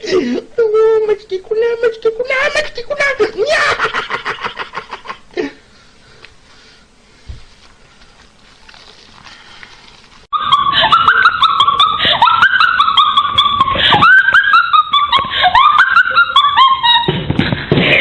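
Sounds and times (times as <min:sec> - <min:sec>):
dog whining and yelping: 0:10.3 - 0:17.2.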